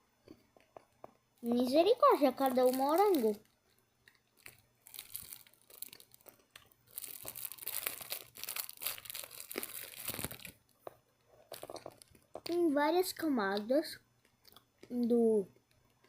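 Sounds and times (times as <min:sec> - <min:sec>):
wrapper crinkling and tearing: 0:02.1 - 0:10.7.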